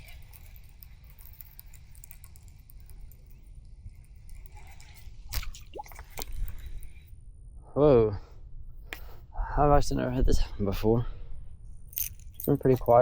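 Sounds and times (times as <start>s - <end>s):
wind rumble on microphone: 8.4s - 11.8s.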